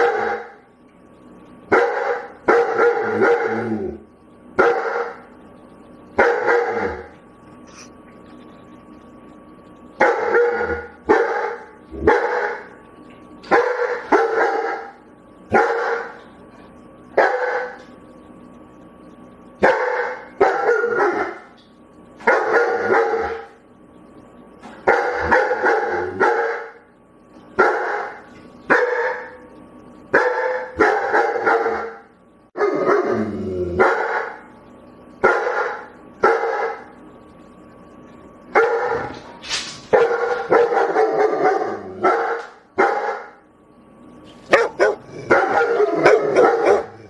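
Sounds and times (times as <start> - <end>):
dog barking: 1.7 - 3.6, 4.6 - 5.2, 6.2 - 7.0, 10.0 - 12.7, 13.5 - 14.9, 15.5 - 16.2, 17.2 - 17.8, 19.6 - 21.5, 22.2 - 23.5, 24.8 - 26.8, 27.6 - 29.4, 30.1 - 32.0, 33.8 - 34.4, 35.2 - 36.9, 38.6 - 39.1, 39.9 - 43.4, 44.5 - 47.0.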